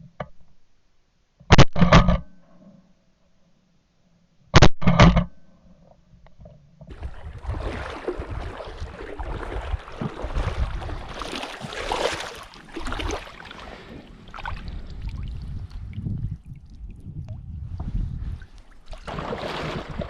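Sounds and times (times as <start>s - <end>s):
water sloshing and splashing: 6.9s - 20.0s.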